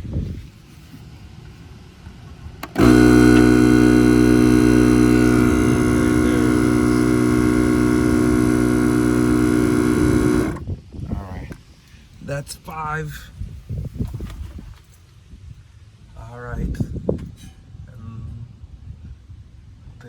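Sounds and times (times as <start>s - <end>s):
electric air compressor running: 2.6s - 10.6s.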